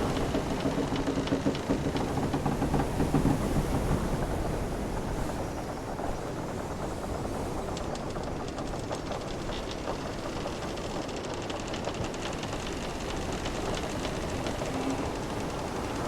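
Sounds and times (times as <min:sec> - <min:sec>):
wooden ship timbers creaking: 0:08.5 - 0:16.0.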